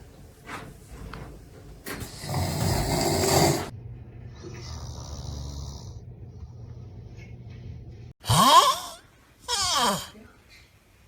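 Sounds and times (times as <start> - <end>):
man snoring: 2.2 - 3.7.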